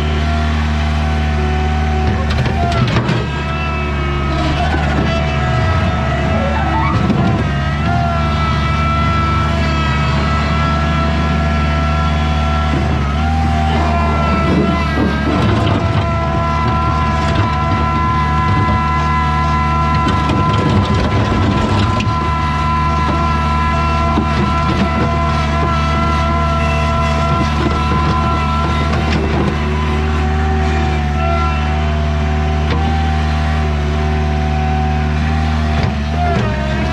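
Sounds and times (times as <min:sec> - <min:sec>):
skid steer engine running: 0:00.0 - 0:36.9
high machine whine: 0:03.3 - 0:11.8.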